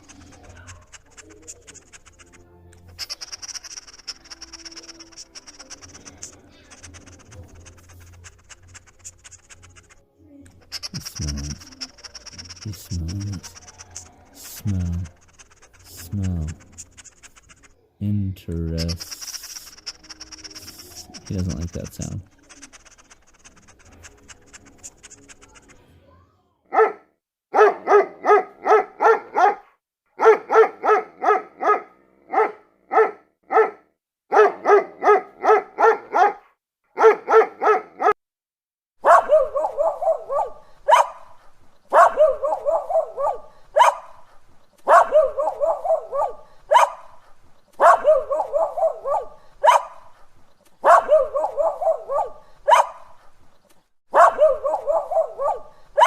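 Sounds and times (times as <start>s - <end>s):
dog barking rapidly: 0.0s - 10.0s, 10.6s - 17.7s, 18.6s - 25.8s, 26.7s - 38.2s, 39.0s - 53.3s, 54.1s - 56.0s.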